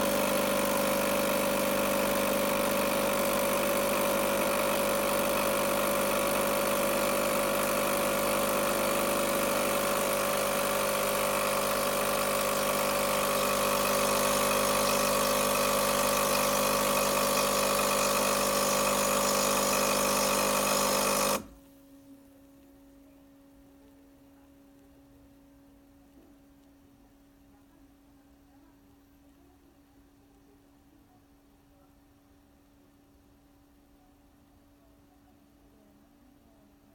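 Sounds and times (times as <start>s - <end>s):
coffee machine humming: 0.0s - 28.6s
faint hum: 21.5s - 36.9s.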